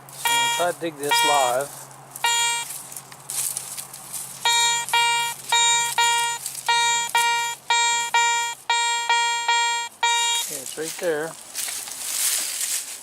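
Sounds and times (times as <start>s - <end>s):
metal detector beeping: 0.2s - 2.8s, 4.4s - 10.6s.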